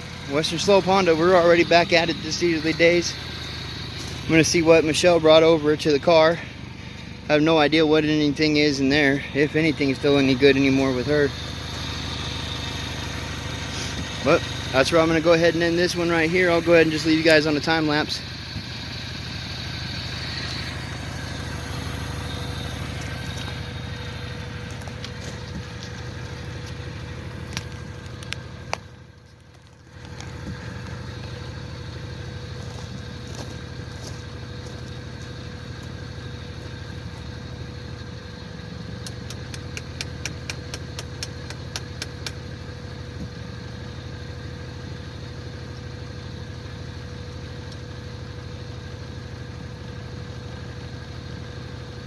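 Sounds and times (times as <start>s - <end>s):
car engine idling: 0.0s - 52.0s
quick ticks: 39.0s - 42.4s.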